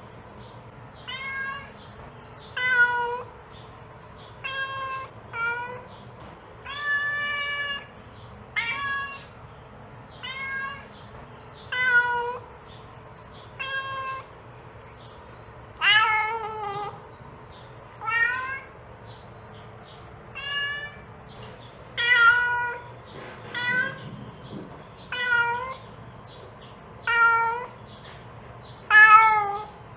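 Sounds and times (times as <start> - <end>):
cat meowing: 1.0 - 1.8, 2.5 - 3.3, 4.4 - 5.9, 6.6 - 9.3, 10.2 - 10.9, 11.7 - 12.5, 13.5 - 14.3, 15.8 - 17.1, 18.0 - 18.8, 20.3 - 21.1, 22.0 - 22.9, 23.5 - 24.1, 25.0 - 25.9, 27.0 - 27.8, 28.9 - 29.8.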